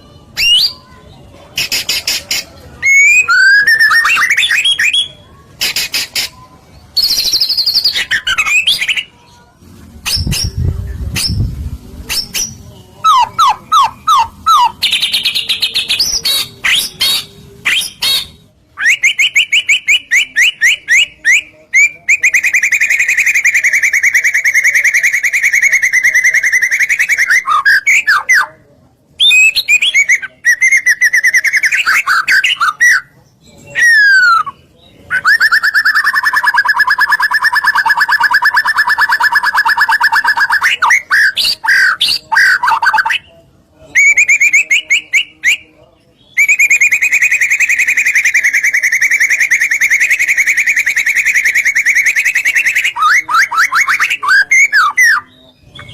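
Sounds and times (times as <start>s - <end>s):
songbird singing varied phrases: 0.0s - 9.4s, 10.0s - 28.6s.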